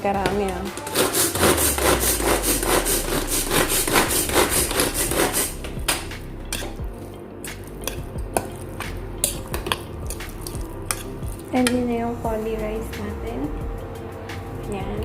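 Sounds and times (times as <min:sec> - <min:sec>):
utensil scraping food in a bowl: 0:00.6 - 0:05.8, 0:07.4 - 0:11.8.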